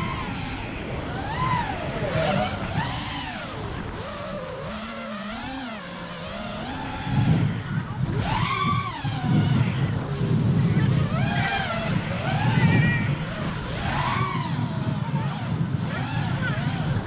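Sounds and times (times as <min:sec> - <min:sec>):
quadcopter motors whining: 0:00.0 - 0:17.0.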